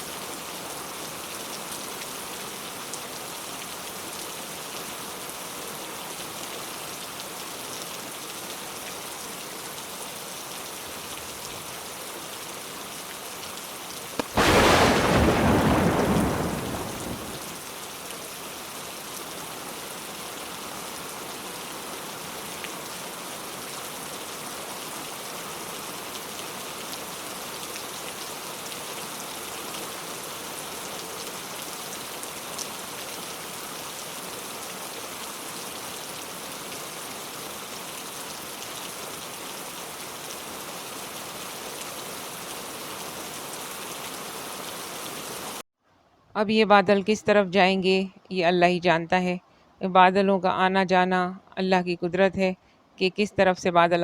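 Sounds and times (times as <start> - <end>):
heavy rain falling: 11.0 - 45.6
thunder clap rumbling: 14.2 - 17.6.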